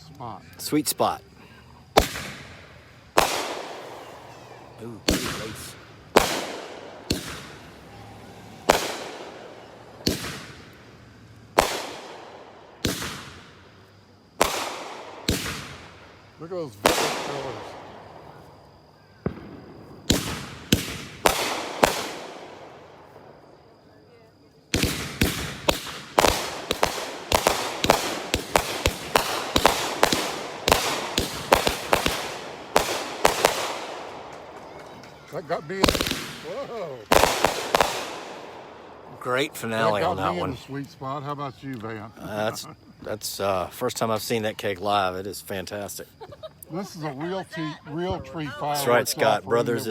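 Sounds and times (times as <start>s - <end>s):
fireworks bangs with echo: 1.9s - 13.7s, 14.4s - 23.4s, 24.7s - 39.9s.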